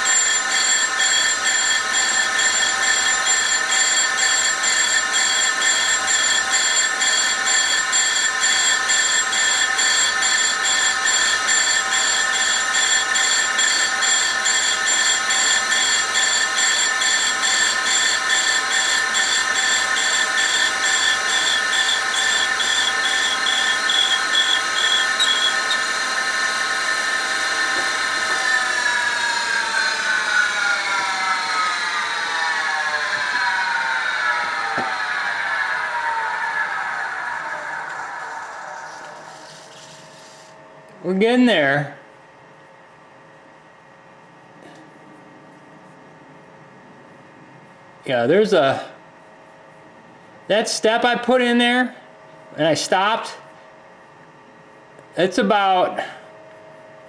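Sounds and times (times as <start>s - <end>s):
grinder whining: 0.0s - 40.6s.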